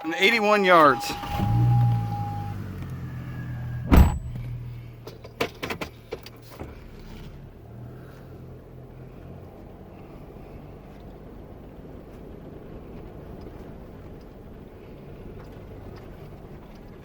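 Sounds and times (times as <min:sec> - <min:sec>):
steady beep: 0:00.0 - 0:02.6
vehicle engine humming: 0:00.0 - 0:17.0
car door shutting: 0:00.8 - 0:07.4.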